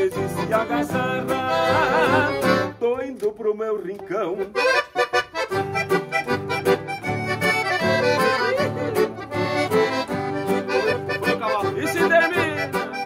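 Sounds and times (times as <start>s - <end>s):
accordion playing melody: 0.0s - 2.9s, 4.2s - 13.0s
rhythm accompaniment and bass: 4.8s - 13.0s.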